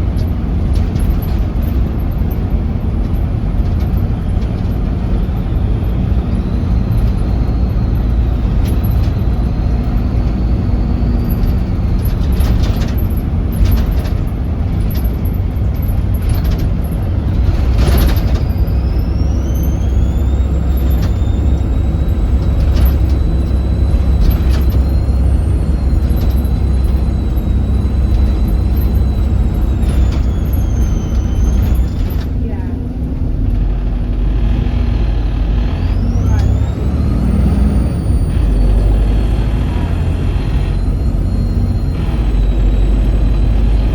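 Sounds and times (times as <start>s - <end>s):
diesel bus engine rumbling: 0.0s - 43.9s
turbo whistle: 18.6s - 32.2s.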